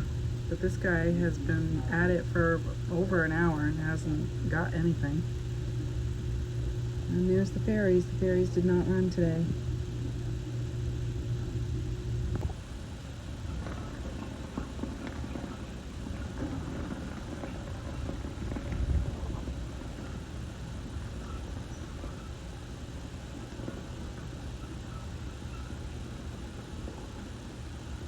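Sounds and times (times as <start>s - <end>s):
steady low hum: 0.0s - 28.0s
wind buffeting microphone: 13.5s - 25.0s.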